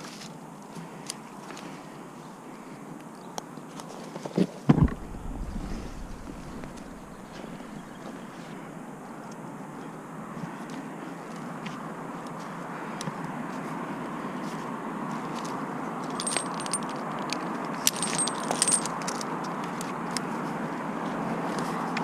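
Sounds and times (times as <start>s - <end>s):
steady background noise: 0.0s - 22.0s
light metallic clinking: 5.0s - 8.4s, 16.1s - 17.0s, 17.8s - 19.1s.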